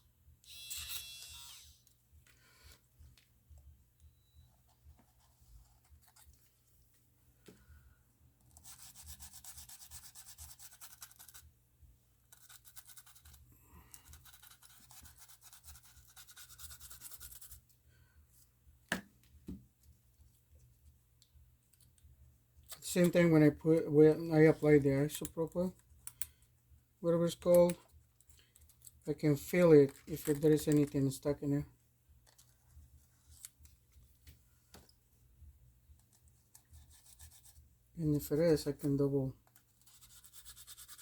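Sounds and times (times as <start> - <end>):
small brush scrubbing: 8.5 - 11.5, 12.3 - 17.6, 39.7 - 41.0.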